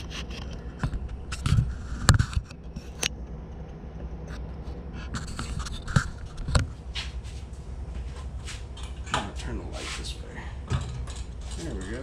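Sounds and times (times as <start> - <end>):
steady low hum: 0.0 - 12.0
parts scraping: 5.0 - 12.0.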